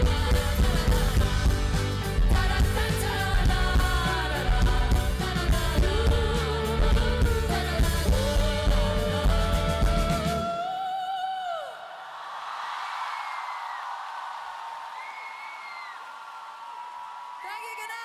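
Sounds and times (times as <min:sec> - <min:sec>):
live rock band playing: 0:00.0 - 0:10.5
person singing: 0:00.0 - 0:11.9.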